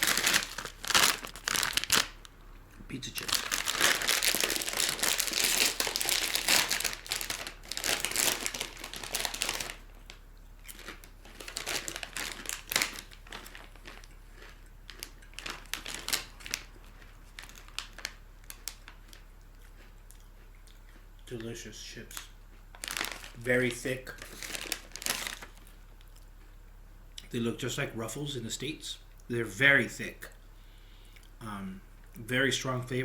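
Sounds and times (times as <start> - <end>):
plastic chip bag crinkling: 0.0 - 19.9, 22.1 - 26.2.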